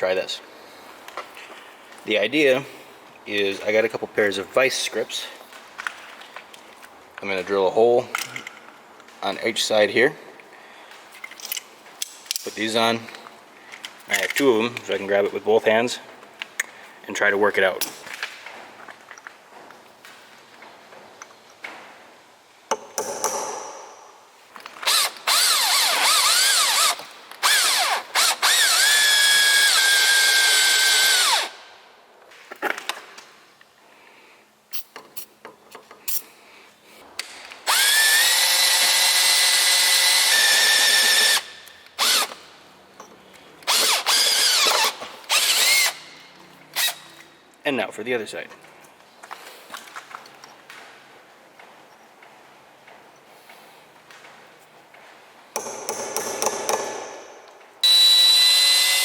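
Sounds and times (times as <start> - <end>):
power drill whining: 24.8 - 31.6, 37.7 - 42.4, 43.6 - 46.1, 57.8 - 59.0.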